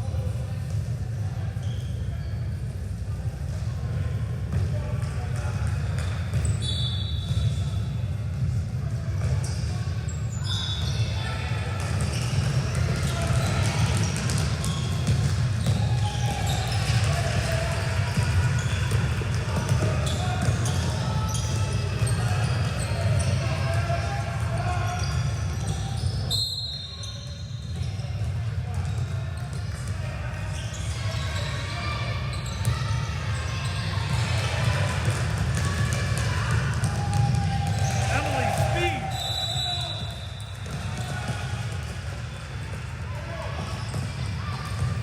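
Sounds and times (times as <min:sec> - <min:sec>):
crowd chatter: 0:00.0 - 0:45.0
ball bouncing on gym floor: 0:11.8 - 0:23.1, 0:34.8 - 0:39.0, 0:40.0 - 0:42.8.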